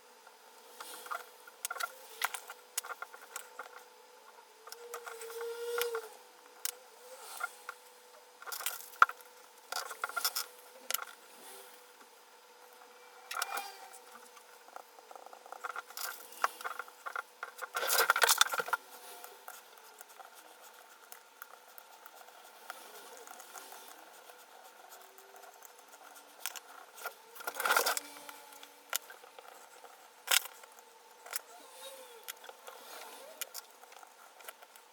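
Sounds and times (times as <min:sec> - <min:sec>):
rustling and scraping: 0:12.7 - 0:34.9.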